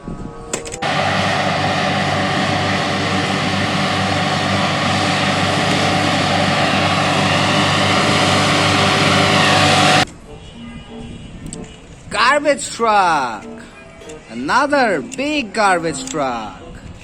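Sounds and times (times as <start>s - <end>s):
clicks: 0.5s - 0.9s
loud steady engine drone: 0.5s - 10.1s.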